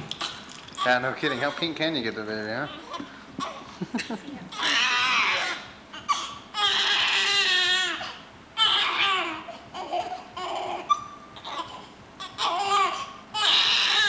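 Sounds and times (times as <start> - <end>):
baby crying: 2.6 - 3.7, 4.5 - 14.0
baby fussing: 2.7 - 3.8, 4.5 - 14.0.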